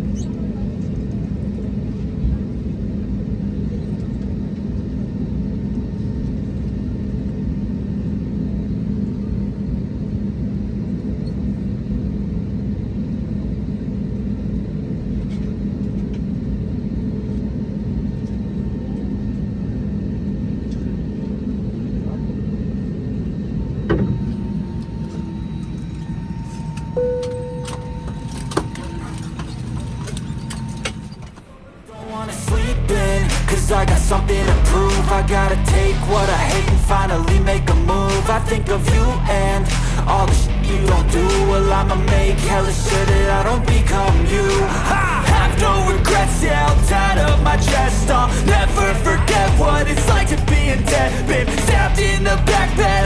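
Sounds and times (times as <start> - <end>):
aircraft engine rumble: 0.0 - 31.4, 32.1 - 53.0
short tone: 26.4 - 29.2
clicks: 26.8 - 31.5.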